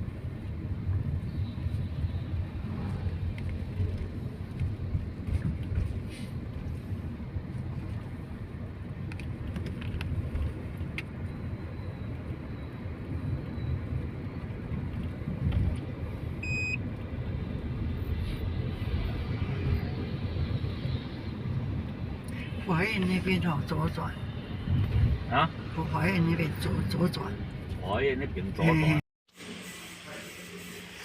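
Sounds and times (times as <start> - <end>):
car engine and road rumble: 0.0 - 29.0
short electronic beep: 16.4 - 16.8.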